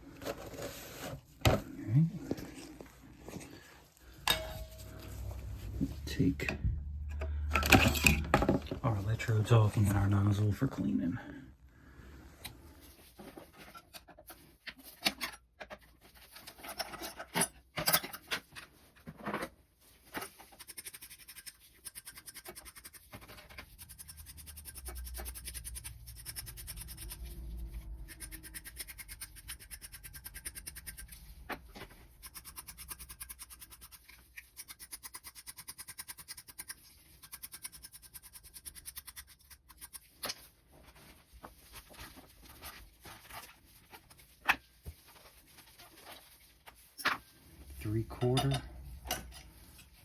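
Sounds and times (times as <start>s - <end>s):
metal tools clinking: 4.1s - 5.3s, 7.4s - 8.7s, 47.0s - 50.0s.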